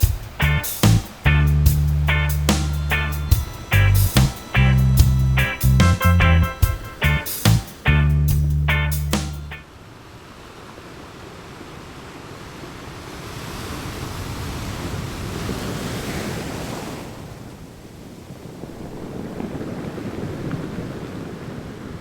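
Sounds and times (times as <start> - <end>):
surf washing up on beach: 9.7 - 22.0
wind buffeting microphone: 17.6 - 22.0.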